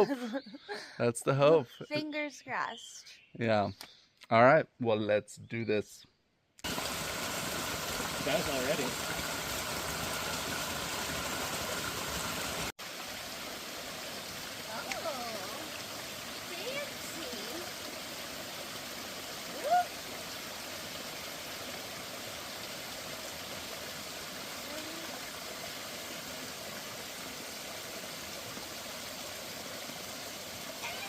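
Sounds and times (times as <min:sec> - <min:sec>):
creek rushing: 0:06.6 - 0:31.0.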